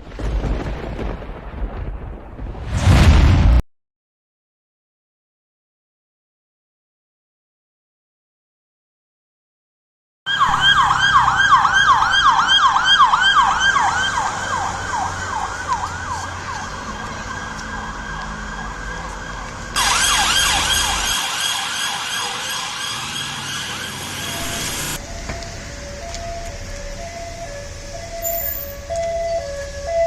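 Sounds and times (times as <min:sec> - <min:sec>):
police siren yelp: 0:10.3 - 0:30.0
low vehicle rumble: 0:23.7 - 0:30.0.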